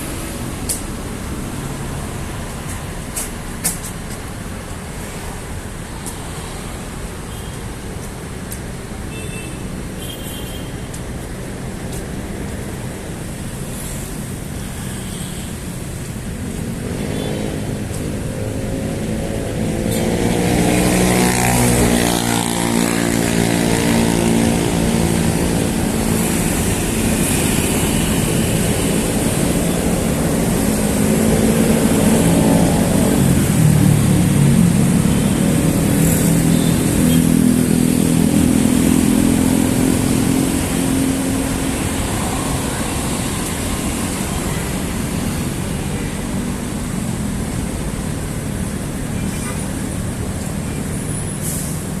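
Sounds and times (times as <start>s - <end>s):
vehicle engines passing: 0.0s - 9.1s, 10.6s - 52.0s
steady traffic hiss: 0.0s - 52.0s.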